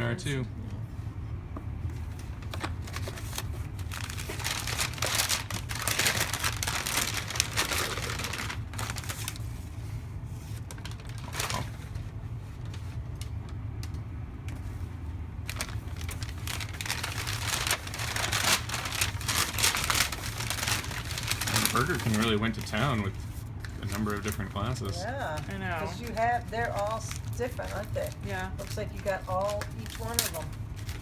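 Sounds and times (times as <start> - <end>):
wrapping paper crinkling: 2.0 - 13.6, 15.4 - 31.0
paper tearing: 2.8 - 9.4, 15.6 - 31.0.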